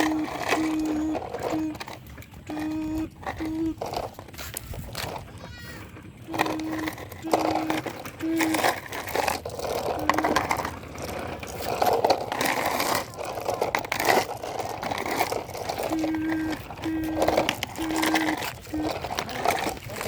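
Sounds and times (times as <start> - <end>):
short steady tones: 0.0 - 3.9, 15.8 - 19.5
gravel crunching and scraping: 0.0 - 20.0.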